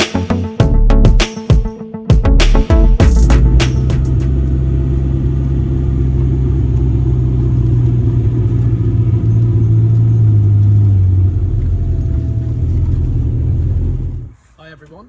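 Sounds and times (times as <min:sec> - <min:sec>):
car engine idling: 0:02.8 - 0:14.4.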